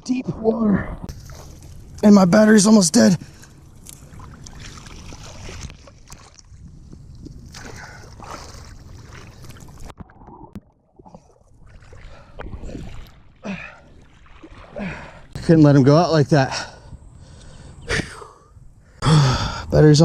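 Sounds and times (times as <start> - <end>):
water sloshing around wading person: 1.1 - 2.1, 3.0 - 15.4.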